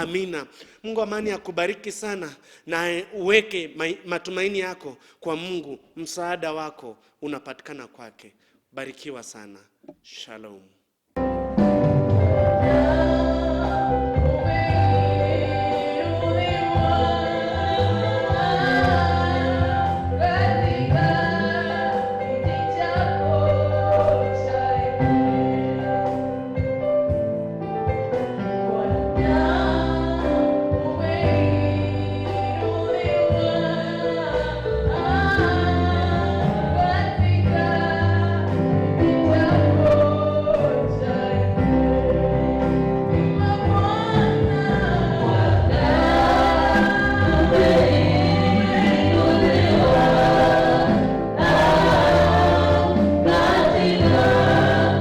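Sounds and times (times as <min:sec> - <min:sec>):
bass and beat: 0:11.2 - 0:21.5, 0:26.6 - 0:55.0
choir singing gospel: 0:12.2 - 0:55.0.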